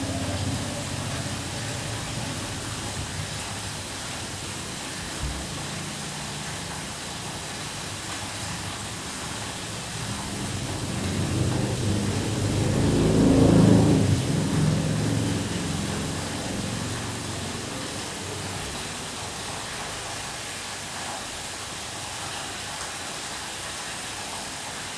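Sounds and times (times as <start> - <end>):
thunder rumbling: 0.0 - 19.0
light rain hissing: 0.0 - 24.9.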